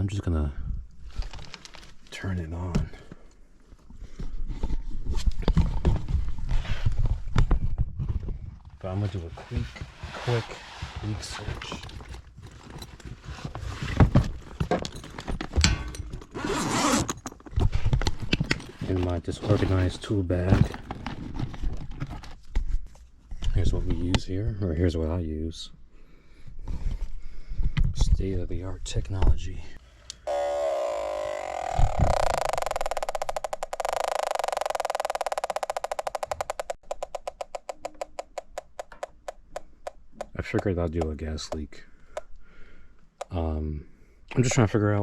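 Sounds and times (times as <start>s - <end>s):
rustle of tool bag handling: 8.9s - 22.4s
tools knocking and clinking: 14.5s - 16.4s
gas detector electronic tone: 30.3s - 36.7s.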